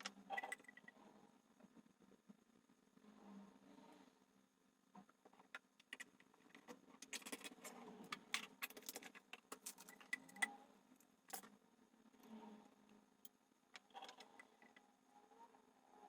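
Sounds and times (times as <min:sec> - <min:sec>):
plastic bottles clicking and rattling: 0:07.0 - 0:10.5.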